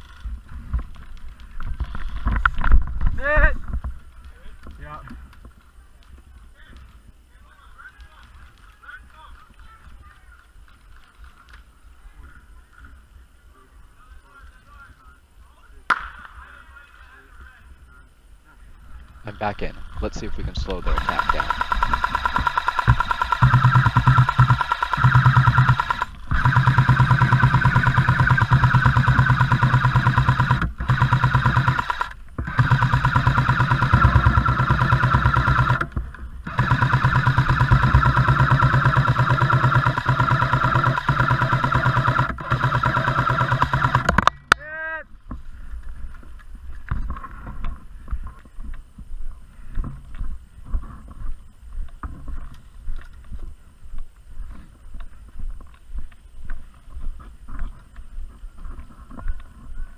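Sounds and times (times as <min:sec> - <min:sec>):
airsoft machine gun firing bursts: 0:20.2 - 0:44.3
knocks and shuffling: 0:45.1 - 0:59.9.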